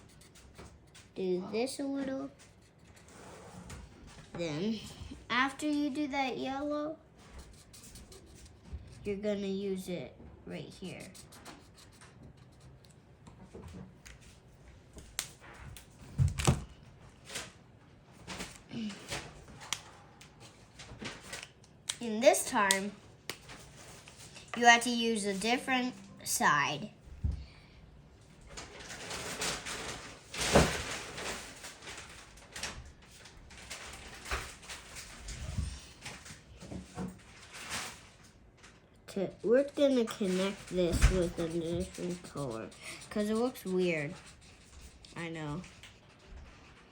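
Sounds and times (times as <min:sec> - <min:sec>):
marker scratching on paper: 0:00.0 - 0:03.6, 0:07.2 - 0:09.8, 0:10.6 - 0:12.9, 0:24.5 - 0:26.7, 0:39.8 - 0:45.8.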